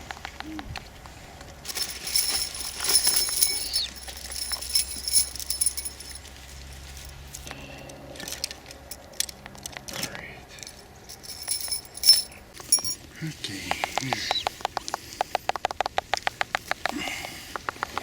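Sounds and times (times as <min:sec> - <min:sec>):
small metal objects jingling: 0:01.7 - 0:07.0, 0:10.6 - 0:13.0.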